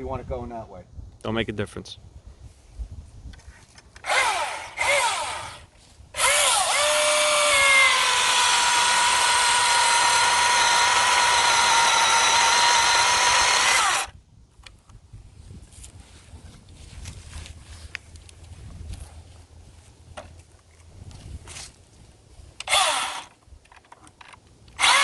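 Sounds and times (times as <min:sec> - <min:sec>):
electric chainsaw motor whine: 0:04.0 - 0:14.2, 0:22.6 - 0:23.4, 0:24.8 - 0:25.0.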